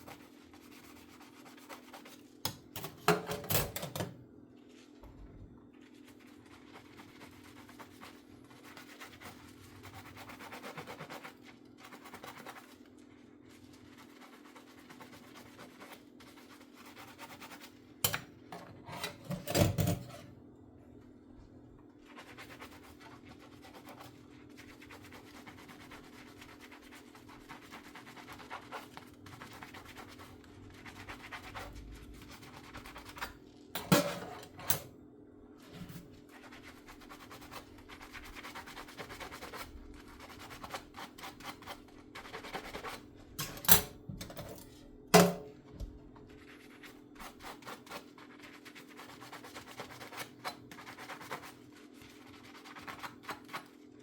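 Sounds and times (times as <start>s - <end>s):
sponge scrubbing a dish: 0.0s - 2.5s, 4.5s - 18.0s, 21.4s - 34.7s, 35.5s - 43.4s, 45.8s - 54.0s
dishes clinking: 18.1s - 20.3s, 33.8s - 34.8s, 43.4s - 45.6s.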